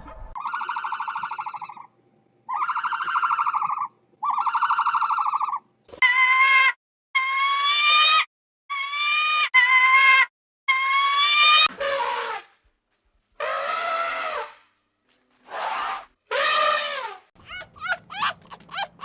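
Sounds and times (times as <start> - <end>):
animal crying: 2.5 - 11.6, 17.4 - 19.0.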